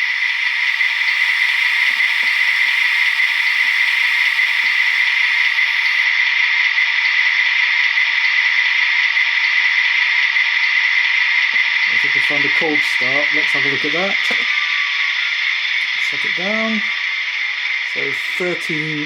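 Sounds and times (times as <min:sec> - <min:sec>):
hissing from tiny speaker: 0:00.0 - 0:06.1, 0:11.9 - 0:19.0.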